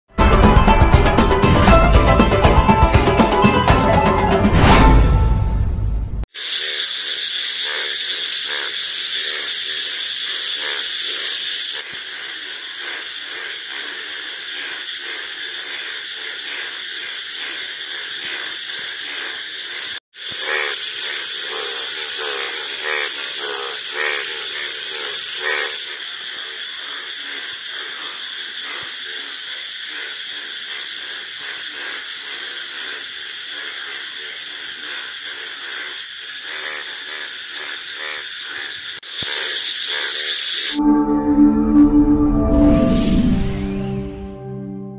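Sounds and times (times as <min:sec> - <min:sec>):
loud frog croaks: 0:06.3 - 0:40.8
frog chorus: 0:06.3 - 0:40.9.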